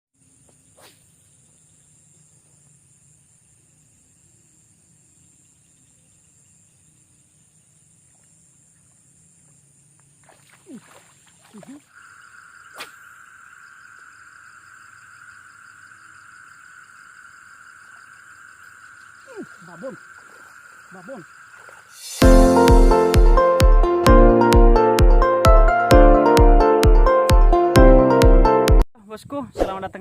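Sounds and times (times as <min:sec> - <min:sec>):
insects trilling high: 0:00.2 - 0:24.0
low insect drone: 0:00.2 - 0:25.4
quick falling sweeps: 0:12.7 - 0:13.1.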